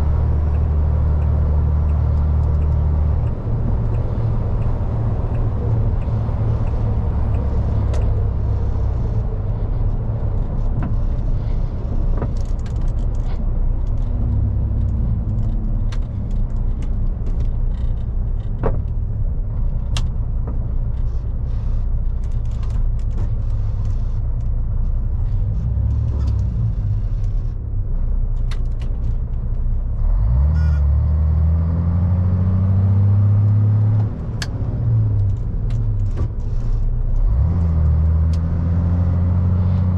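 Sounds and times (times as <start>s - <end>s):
truck diesel engine rumbling: 0.0s - 39.9s
rattles and clicks: 0.5s - 27.6s.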